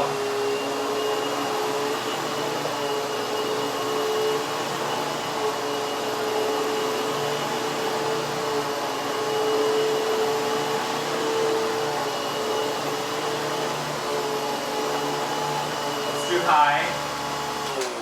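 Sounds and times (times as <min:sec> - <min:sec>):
upright vacuum cleaner running: 0:00.0 - 0:18.0.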